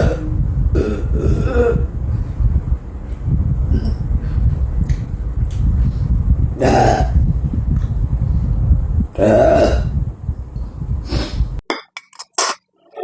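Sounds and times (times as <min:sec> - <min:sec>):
steady low rumble: 0:00.0 - 0:11.6
person burping loudly: 0:06.6 - 0:07.2, 0:09.2 - 0:09.9.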